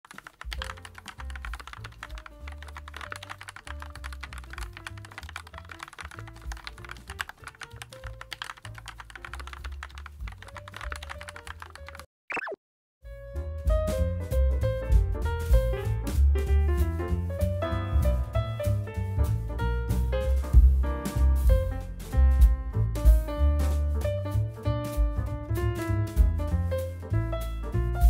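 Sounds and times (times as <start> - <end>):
mechanical keyboard typing: 0.1 - 12.1
background music with bass: 13.1 - 28.0.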